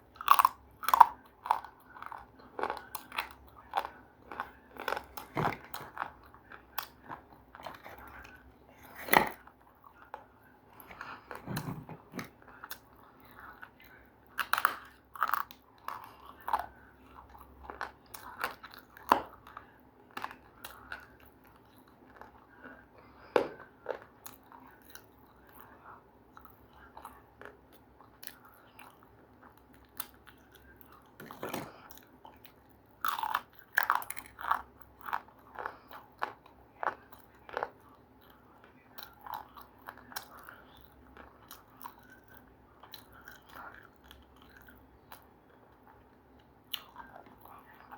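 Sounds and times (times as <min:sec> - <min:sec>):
crunchy food chewing: 0:00.1 - 0:47.9.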